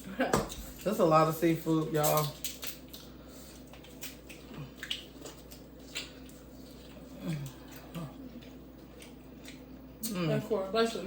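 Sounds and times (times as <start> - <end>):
chewing with wet smacks: 2.1 - 10.5.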